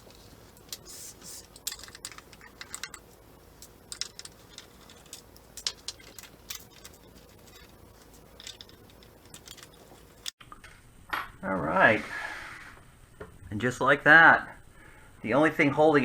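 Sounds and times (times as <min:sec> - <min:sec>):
screwdriver clicking on screws: 0:00.0 - 0:10.3.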